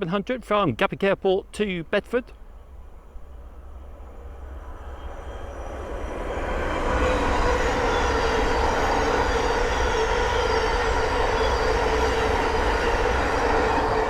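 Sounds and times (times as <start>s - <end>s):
train whine: 0.0s - 14.0s
electric train passing: 1.2s - 14.0s.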